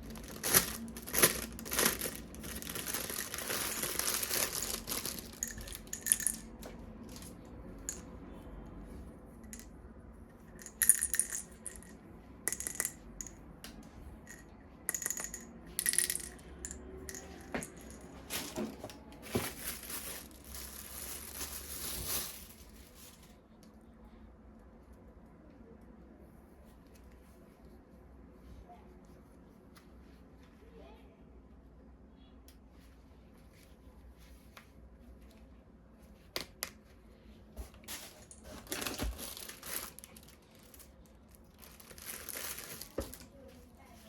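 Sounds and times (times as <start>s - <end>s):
plastic wrapping rustling: 0.0s - 7.3s, 17.1s - 23.4s, 37.6s - 44.0s
plastic pieces clicking and clinking: 14.3s - 18.0s.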